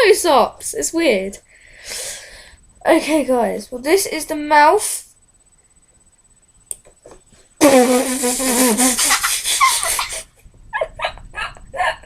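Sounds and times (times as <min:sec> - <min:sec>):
girl laughing loudly: 0:07.6 - 0:12.0.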